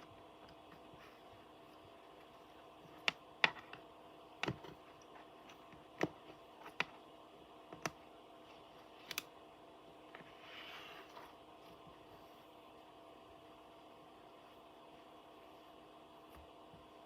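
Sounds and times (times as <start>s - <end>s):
soft rustle: 10.2s - 12.8s.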